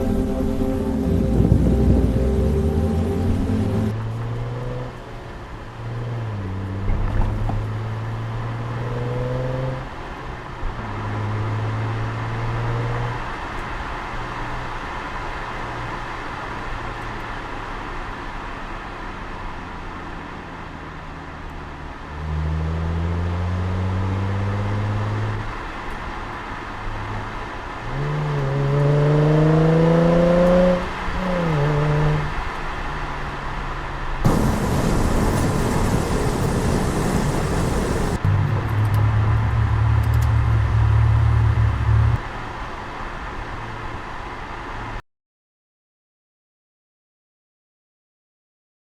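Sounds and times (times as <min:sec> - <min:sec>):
car engine revving: 0:00.0 - 0:05.0, 0:27.9 - 0:32.3, 0:34.2 - 0:42.2.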